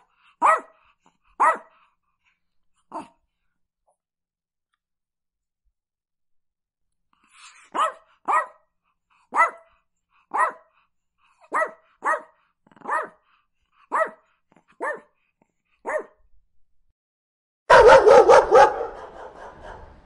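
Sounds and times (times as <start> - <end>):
small dog barking high-pitched: 0.4 - 0.8, 1.4 - 1.8, 7.7 - 8.7, 9.3 - 9.7, 10.3 - 10.8, 11.4 - 13.2, 13.9 - 15.1, 15.8 - 16.2, 17.7 - 19.8.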